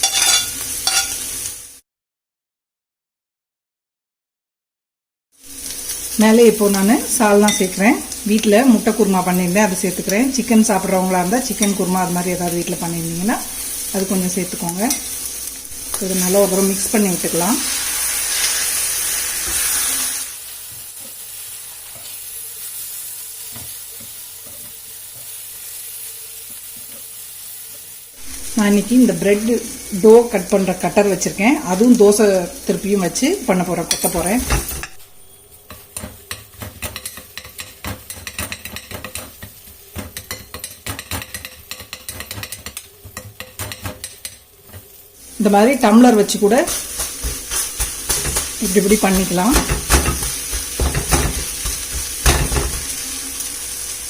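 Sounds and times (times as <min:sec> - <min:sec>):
metal blades clattering on a pan: 0:00.0 - 0:01.2, 0:11.5 - 0:11.9, 0:33.8 - 0:35.0, 0:35.7 - 0:45.0, 0:45.9 - 0:53.0
food sizzling on a griddle: 0:00.0 - 0:01.8, 0:05.4 - 0:54.0.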